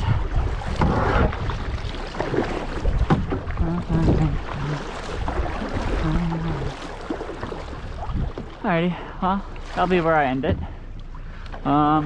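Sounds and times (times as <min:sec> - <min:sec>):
wind buffeting microphone: 0:00.0 - 0:08.9
paddle splashing in water: 0:00.0 - 0:12.0.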